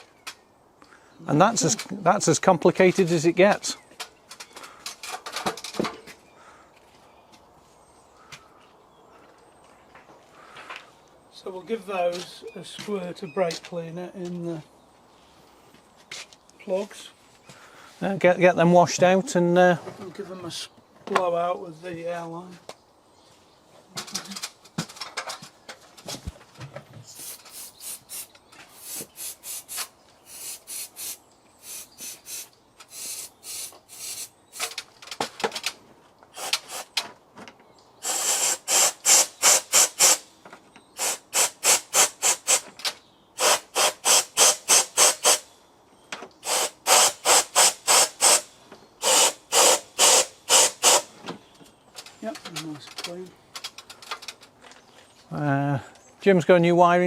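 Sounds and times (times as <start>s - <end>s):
short hissing spray bursts: 27.1s - 34.7s, 36.3s - 36.9s, 38.0s - 40.2s, 41.0s - 42.6s, 43.4s - 45.5s, 46.4s - 51.1s.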